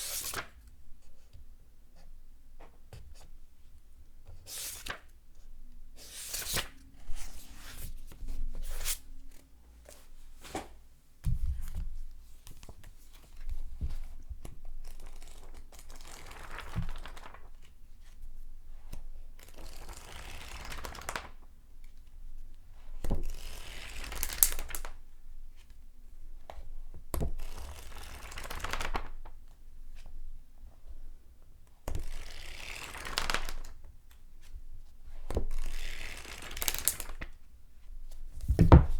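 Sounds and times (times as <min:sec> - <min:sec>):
paper pages turning: 0:00.0 - 0:00.5, 0:04.5 - 0:05.0, 0:06.0 - 0:09.0, 0:16.3 - 0:17.4, 0:32.4 - 0:33.7, 0:35.6 - 0:37.2.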